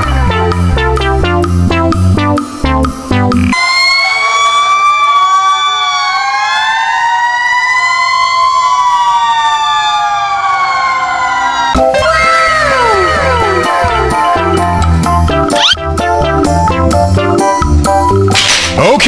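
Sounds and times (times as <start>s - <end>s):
toy sirens wailing: 3.5s - 14.9s, 15.5s - 15.8s
guitar music: 11.8s - 18.9s.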